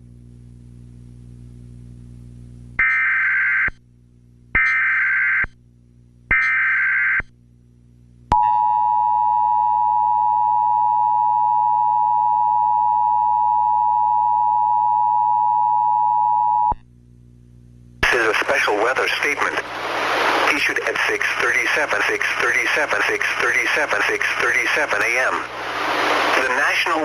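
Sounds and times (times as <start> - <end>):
steady attention tone: 18.0 - 27.0.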